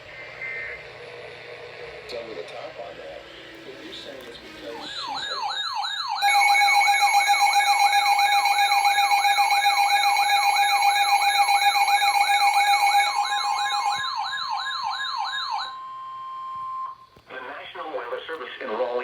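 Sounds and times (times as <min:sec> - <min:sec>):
fast falling siren wail: 0:04.8 - 0:15.8
steady alert tone: 0:04.8 - 0:15.8.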